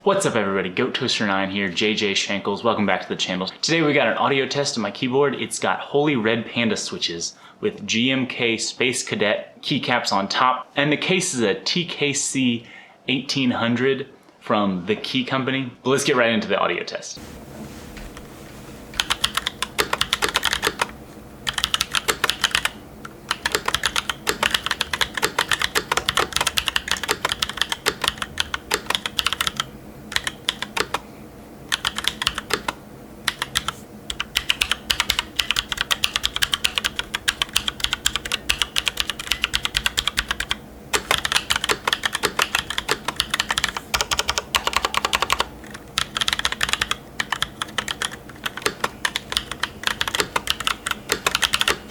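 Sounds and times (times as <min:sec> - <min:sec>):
mechanical keyboard typing clicks: 0:19.0 - 0:31.0, 0:31.7 - 0:51.8.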